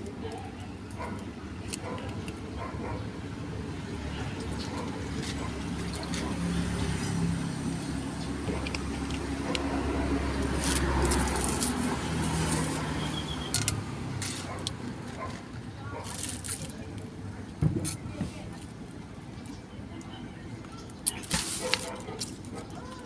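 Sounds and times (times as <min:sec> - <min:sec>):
motor vehicle engine running: 0:00.0 - 0:17.6.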